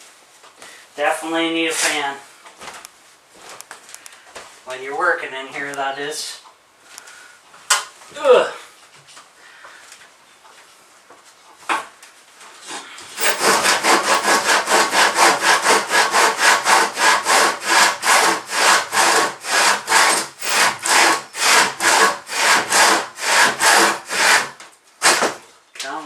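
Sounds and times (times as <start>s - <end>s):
hand saw cutting wood: 13.2s - 25.4s.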